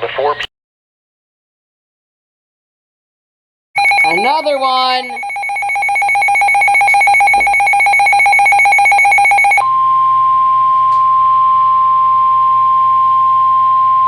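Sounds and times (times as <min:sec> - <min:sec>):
pulsing trilling alert tone: 0:03.8 - 0:09.6
steady high alarm tone: 0:03.8 - 0:12.6.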